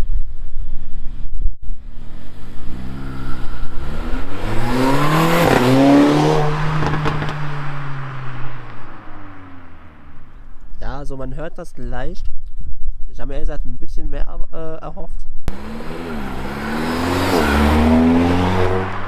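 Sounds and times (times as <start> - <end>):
car engine revving: 1.7 - 10.6, 15.5 - 19.0.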